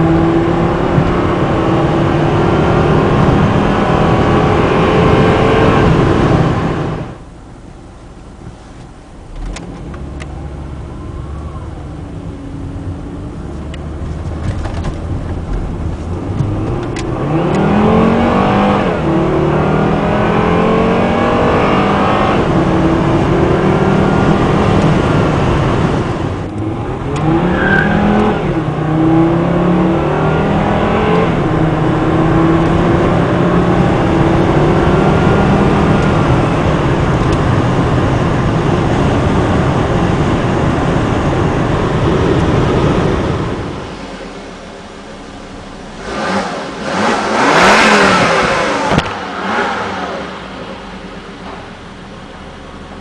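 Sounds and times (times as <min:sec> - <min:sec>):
car engine accelerating hard: 0:00.0 - 0:07.6, 0:08.3 - 0:53.0.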